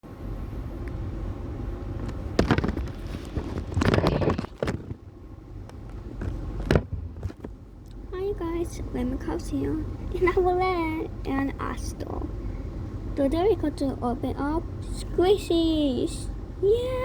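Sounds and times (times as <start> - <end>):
steady low rumble: 0.0 - 17.0
sharp knocks and bumps: 2.1 - 5.0, 6.2 - 7.6.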